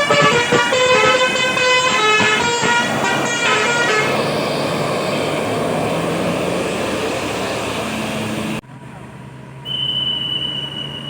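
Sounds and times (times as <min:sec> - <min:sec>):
musical bus horn: 0:00.0 - 0:06.4
bus engine: 0:00.0 - 0:11.0
road noise: 0:00.0 - 0:11.0.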